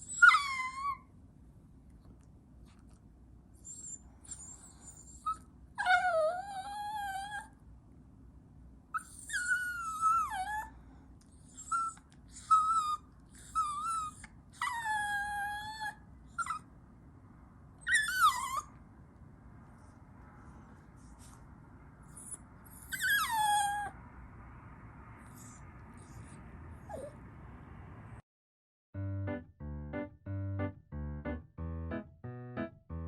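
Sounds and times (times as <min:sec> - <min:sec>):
puppy whining and howling: 0:00.0 - 0:01.1, 0:03.6 - 0:07.6, 0:09.0 - 0:10.7, 0:11.4 - 0:16.7, 0:17.8 - 0:18.8, 0:22.1 - 0:24.0, 0:25.3 - 0:27.2
puppy yelps: 0:00.0 - 0:01.1, 0:03.6 - 0:07.5, 0:09.0 - 0:10.7, 0:11.5 - 0:16.7, 0:17.8 - 0:18.7, 0:22.1 - 0:23.9, 0:25.3 - 0:27.2.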